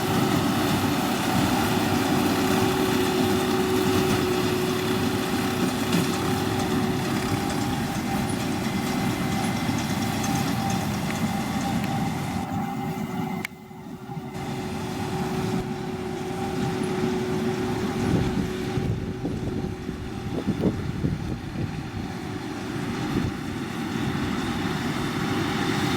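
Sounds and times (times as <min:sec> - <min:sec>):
square baler working: 0:00.0 - 0:13.4, 0:14.1 - 0:25.9
tractor running: 0:00.0 - 0:25.9.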